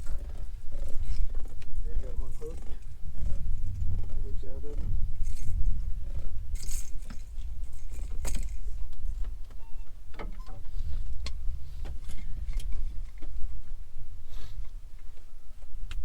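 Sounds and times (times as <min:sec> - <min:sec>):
low rumble: 0:00.0 - 0:15.9.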